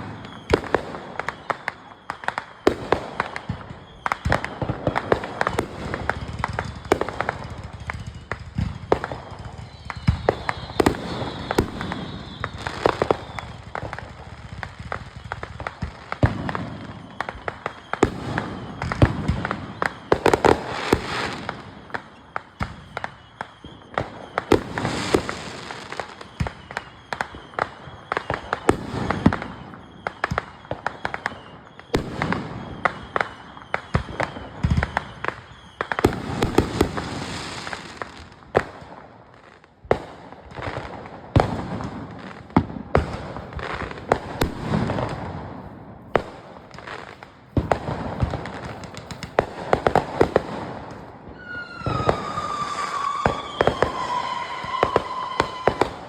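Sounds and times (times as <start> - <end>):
fireworks bangs and pops: 0.0 - 56.0
fireworks crackling: 0.0 - 56.0.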